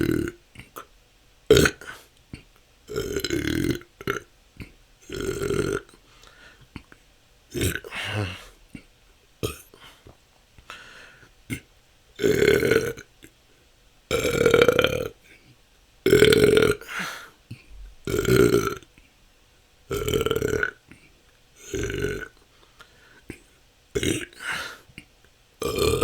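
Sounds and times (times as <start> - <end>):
person burping: 0.0 - 0.9, 1.5 - 6.0, 6.8 - 9.8, 11.5 - 13.1, 14.1 - 15.2, 16.1 - 17.2, 18.1 - 18.9, 19.9 - 21.0, 21.6 - 22.4, 24.0 - 24.8, 25.6 - 26.0.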